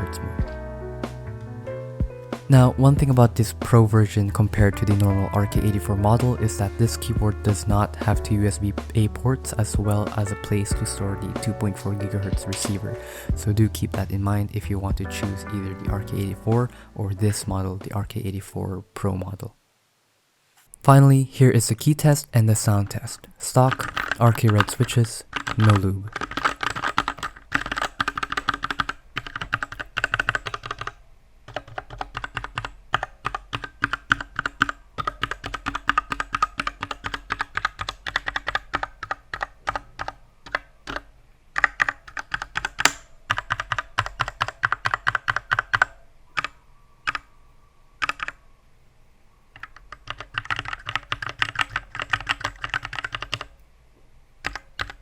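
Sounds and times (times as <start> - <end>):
mechanical keyboard typing: 4.6 - 8.2, 22.8 - 47.3, 48.0 - 48.4, 49.6 - 53.5, 54.4 - 55.0.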